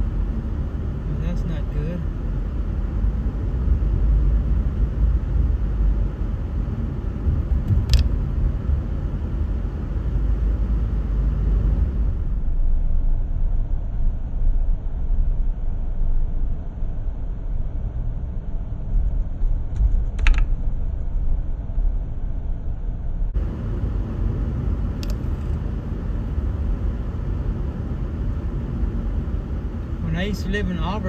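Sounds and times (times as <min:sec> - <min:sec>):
car driving rumble: 0:00.0 - 0:12.5, 0:23.3 - 0:31.0.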